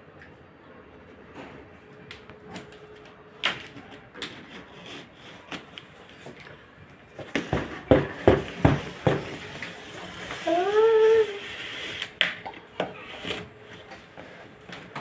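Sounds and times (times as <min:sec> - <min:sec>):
packaging rubbing and scraping: 0:03.6 - 0:06.4, 0:07.2 - 0:12.2.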